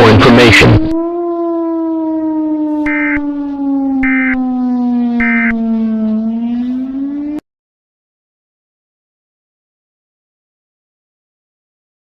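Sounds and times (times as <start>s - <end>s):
low siren-like alert tone: 0.1s - 7.4s
short high beeps: 2.9s - 3.2s, 4.0s - 4.4s, 5.2s - 5.5s.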